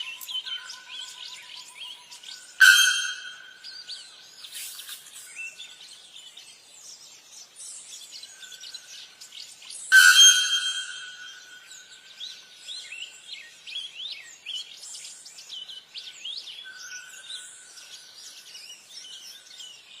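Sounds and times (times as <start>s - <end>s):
faint steady high tone: 0.0s - 4.2s, 9.9s - 12.1s
birds chirping and whistling: 0.0s - 20.0s.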